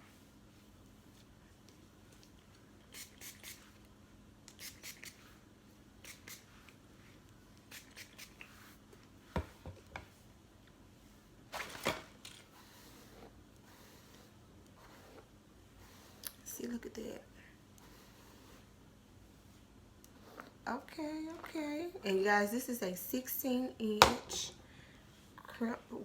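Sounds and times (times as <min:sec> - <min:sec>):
spray bottle squirts hissing: 0:02.9 - 0:03.7, 0:04.5 - 0:05.3, 0:06.0 - 0:06.5, 0:07.7 - 0:08.5.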